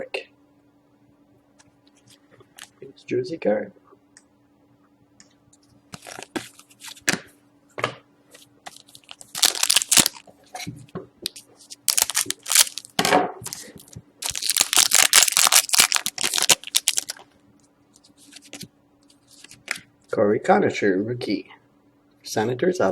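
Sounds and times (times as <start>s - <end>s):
packaging crinkling and tearing: 6.0s - 7.0s, 8.7s - 10.3s, 11.2s - 17.3s.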